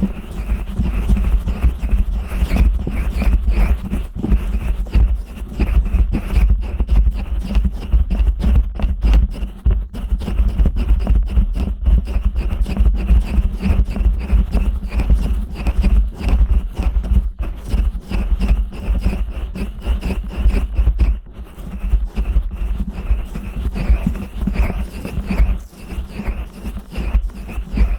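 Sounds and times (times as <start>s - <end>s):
hands rubbing microphone: 0.0s - 27.9s.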